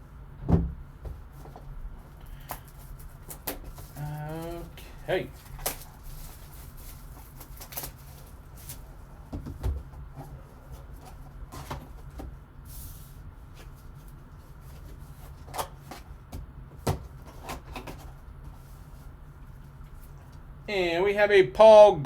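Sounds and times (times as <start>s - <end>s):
low steady hum: 0.0s - 22.0s
packaging crinkle: 5.3s - 9.0s.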